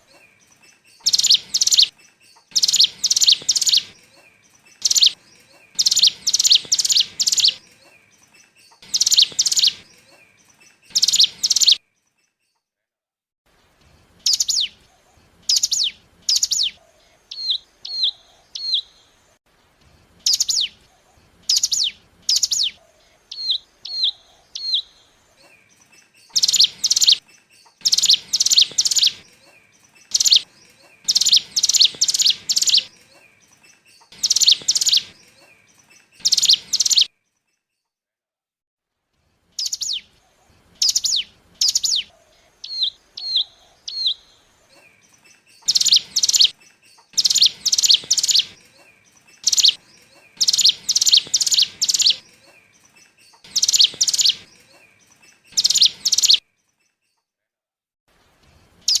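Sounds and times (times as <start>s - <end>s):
rapid bird chattering: 0.0s - 11.8s, 21.5s - 24.7s, 25.4s - 37.1s, 40.7s - 56.4s
bird song with down-slurred notes: 0.1s - 12.6s, 13.6s - 37.9s, 39.3s - 57.4s, 58.2s - 59.0s.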